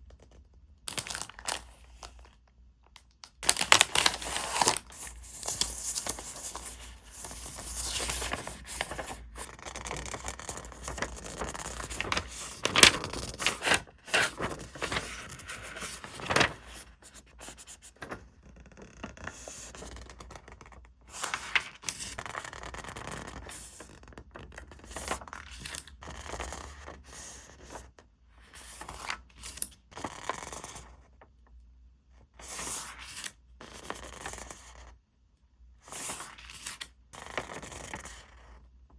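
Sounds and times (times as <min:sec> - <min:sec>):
paper and plastic rustling: 0:03.4 - 0:18.2.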